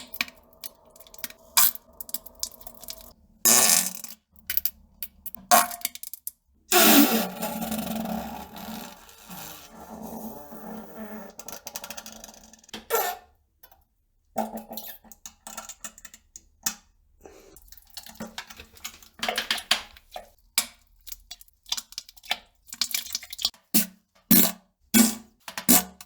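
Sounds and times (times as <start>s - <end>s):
farts and splutters: 0.0s - 4.1s, 6.7s - 13.1s.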